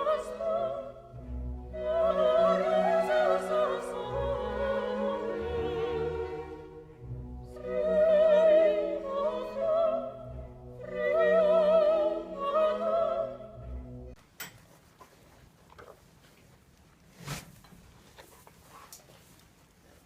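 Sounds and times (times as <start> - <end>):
operatic singing with vibrato: 0.0 - 14.2
orchestral accompaniment: 0.0 - 14.2.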